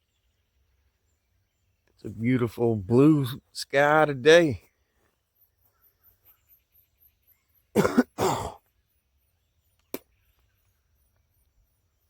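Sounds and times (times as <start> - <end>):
man coughing: 7.8 - 8.6.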